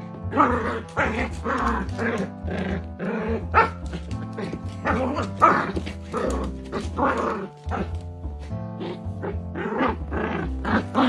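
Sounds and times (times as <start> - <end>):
dog barking: 3.5 - 3.8.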